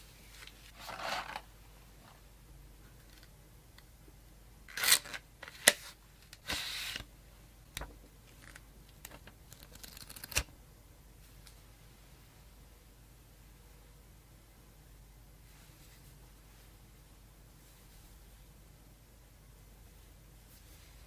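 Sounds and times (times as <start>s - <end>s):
small crackles: 7.8s - 10.5s.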